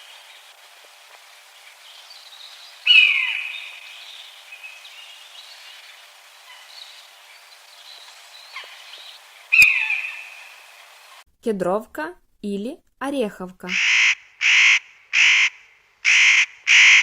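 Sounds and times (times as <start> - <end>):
buzzard mewing cry: 2.9 - 3.7, 9.5 - 10.5, 13.7 - 17.0
faint bird chirps: 6.4 - 10.5.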